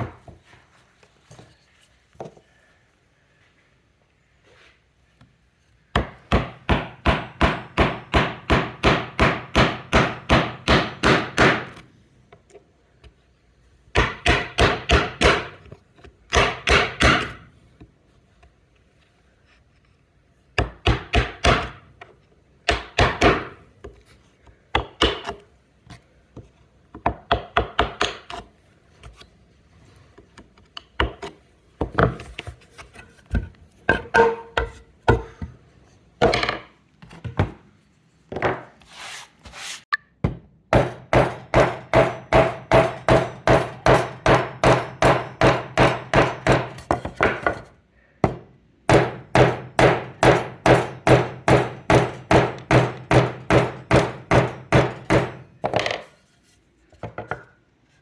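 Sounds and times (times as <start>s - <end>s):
hammer striking a chisel: 6.0s - 11.8s, 14.0s - 15.6s, 16.3s - 17.4s, 40.3s - 47.6s, 48.2s - 55.8s.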